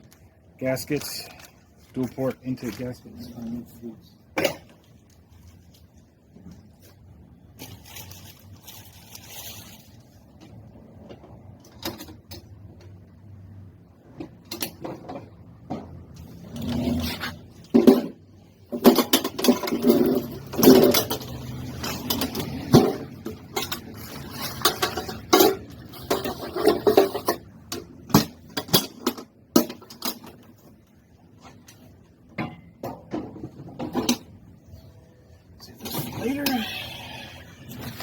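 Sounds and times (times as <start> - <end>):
packaging rustling: 7.6 - 10.2.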